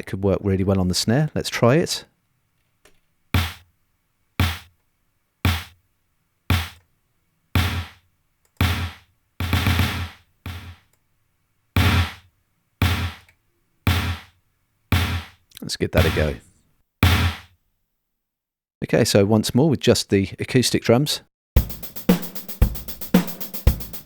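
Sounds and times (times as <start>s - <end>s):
heavy drum hits: 21.6s - 24.0s.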